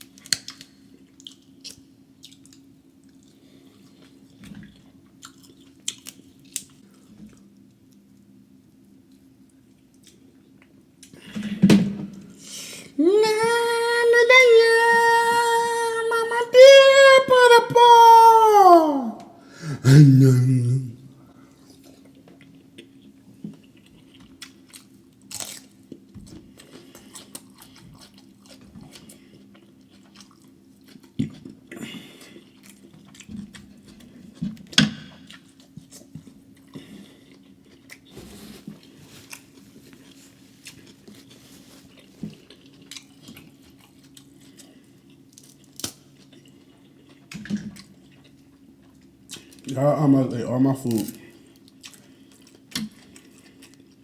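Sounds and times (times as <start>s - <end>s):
crab shell cracks and crunches: 0.2s - 2.6s, 25.2s - 26.0s, 45.3s - 46.3s
chewing and smacking: 0.2s - 8.0s, 21.8s - 38.1s, 38.8s - 49.7s, 51.4s - 54.0s.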